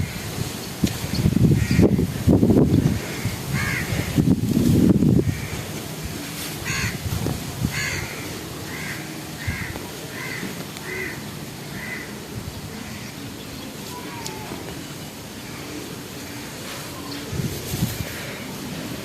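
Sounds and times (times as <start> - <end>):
crow cawing: 3.0 - 4.1, 6.6 - 7.0, 7.7 - 12.2, 12.8 - 13.2.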